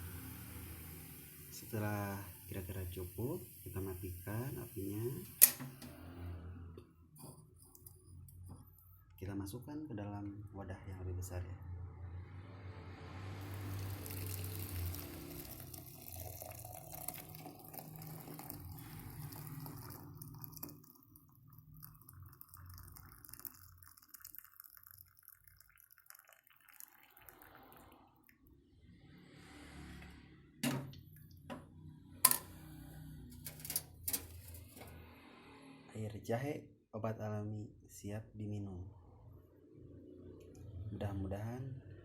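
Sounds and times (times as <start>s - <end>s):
water pouring into container: 0.0s - 6.0s, 13.4s - 28.5s.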